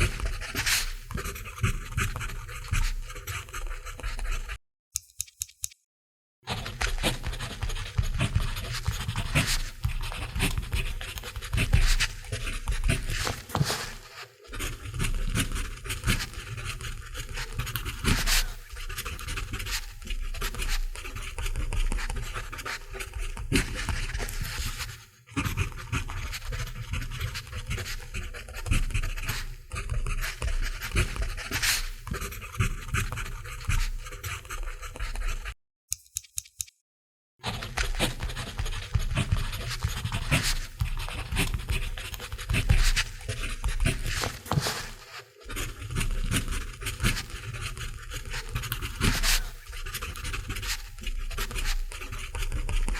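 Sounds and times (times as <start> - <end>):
pencil scratching on paper: 0.0 - 4.6, 6.5 - 35.6, 37.4 - 52.9.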